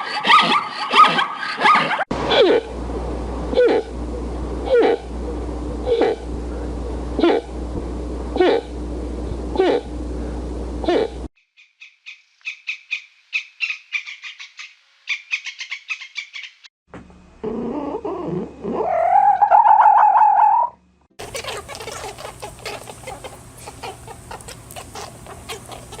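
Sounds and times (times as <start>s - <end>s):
chatter of many animal calls: 0.0s - 2.7s, 10.8s - 16.7s, 18.7s - 26.0s
rapid high bird chirps: 11.4s - 16.7s
long rising animal call: 17.4s - 26.0s.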